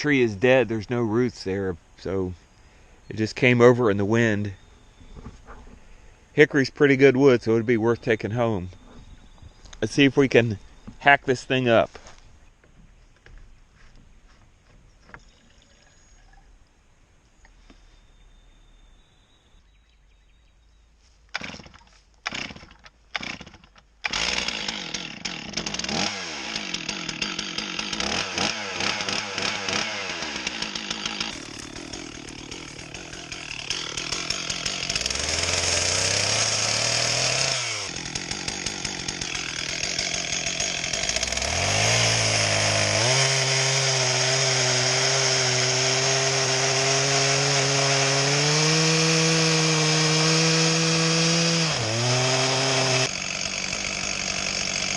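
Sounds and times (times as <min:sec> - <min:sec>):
chainsaw starting and revving: 0:21.3 - 0:54.9.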